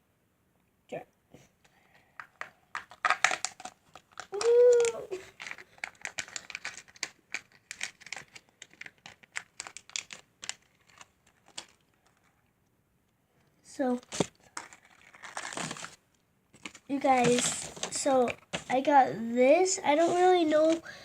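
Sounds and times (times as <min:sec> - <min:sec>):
packaging crinkling: 0:01.9 - 0:12.4, 0:13.9 - 0:18.8
person saying ooh: 0:04.3 - 0:05.2.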